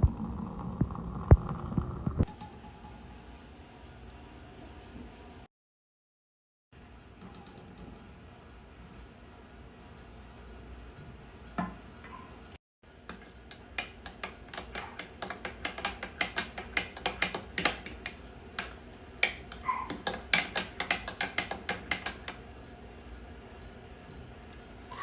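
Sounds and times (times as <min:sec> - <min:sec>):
rapid irregular clicking and clacking: 0:13.1 - 0:22.4.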